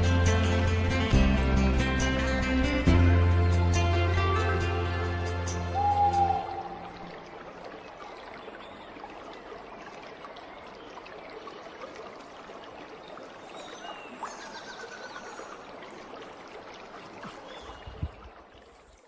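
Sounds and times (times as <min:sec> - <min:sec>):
water trickling: 0:04.0 - 0:19.0.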